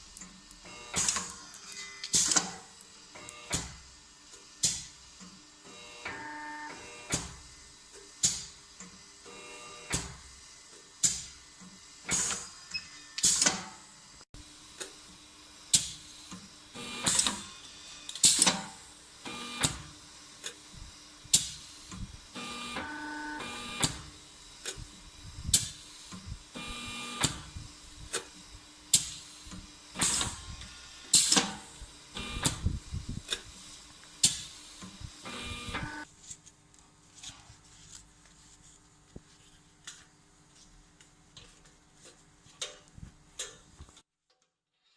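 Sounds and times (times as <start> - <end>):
feed motor whirring: 5.6 - 7.7, 16.7 - 36.1
steady machine hum: 13.8 - 36.1.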